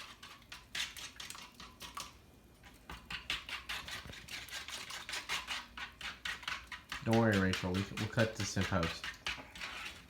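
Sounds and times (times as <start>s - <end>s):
whisk clicking against tray: 2.9s - 10.0s
sugar granules grating: 3.0s - 10.0s.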